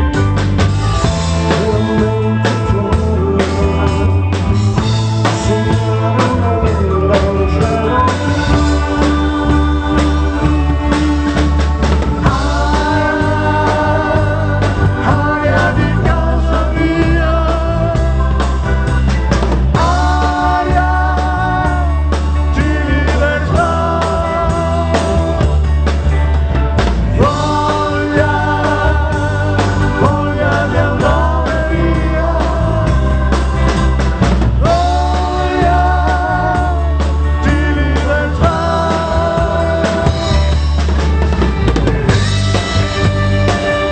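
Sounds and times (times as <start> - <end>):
live pop-rock band playing: 0.0 - 43.9.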